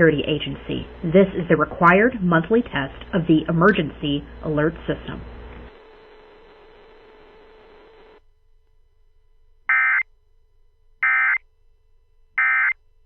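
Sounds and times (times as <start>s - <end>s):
buzzy data bursts: 0.0s - 8.2s
broadcast audio hiss: 0.0s - 11.4s.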